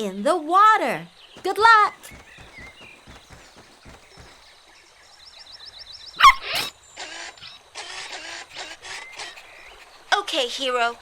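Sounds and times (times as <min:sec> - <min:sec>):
puppy bark: 0:06.2 - 0:06.7.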